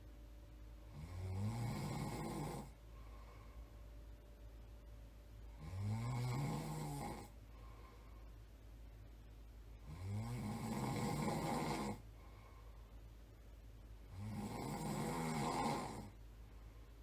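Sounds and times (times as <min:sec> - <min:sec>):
person snoring: 0:00.9 - 0:02.8, 0:05.5 - 0:07.4, 0:09.8 - 0:12.0, 0:14.1 - 0:16.2.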